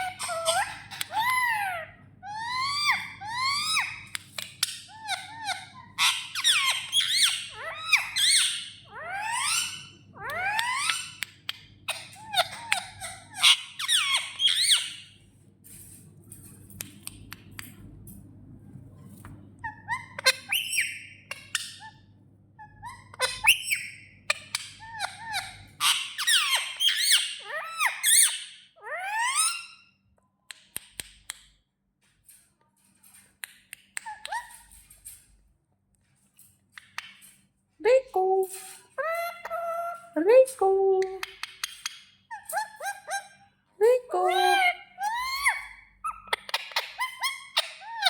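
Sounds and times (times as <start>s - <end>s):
parrot squawking and whistling: 0.0s - 4.1s, 4.8s - 11.2s, 11.9s - 15.1s, 19.6s - 22.0s, 22.6s - 29.9s, 41.3s - 43.4s, 44.1s - 48.0s
parrot clicks: 16.7s - 17.8s, 30.5s - 31.6s, 41.0s - 42.0s.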